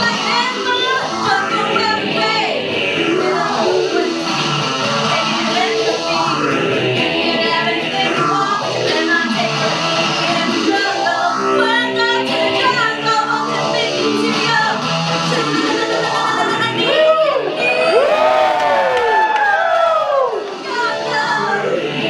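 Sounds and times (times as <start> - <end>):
woman singing: 0.0 - 4.2, 5.1 - 6.3, 7.2 - 18.0
band with guitar: 0.0 - 22.0.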